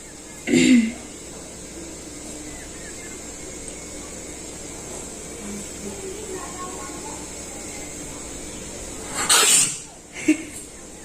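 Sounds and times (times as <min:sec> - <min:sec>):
thin high-pitched whine: 0:00.0 - 0:11.0
person sneezing: 0:00.5 - 0:01.0.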